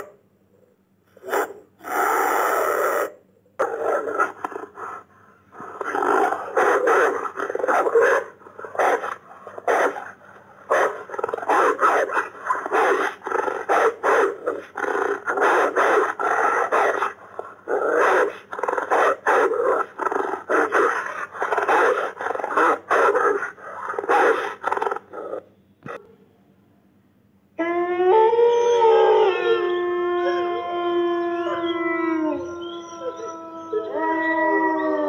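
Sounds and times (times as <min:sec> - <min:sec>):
wolf growling and snarling: 0:01.2 - 0:26.0.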